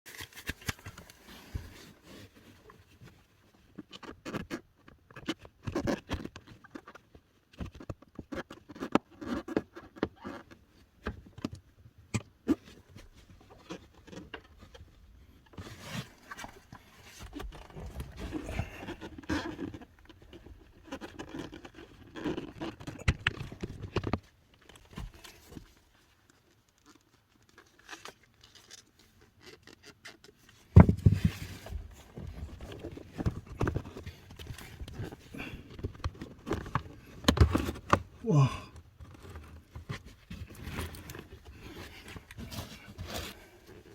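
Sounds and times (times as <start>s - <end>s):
rustling: 12.7s - 43.9s.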